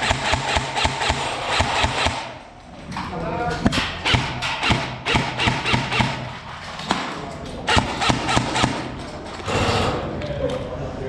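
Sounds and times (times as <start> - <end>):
airsoft gun shots: 0.0 - 2.4, 4.0 - 9.0.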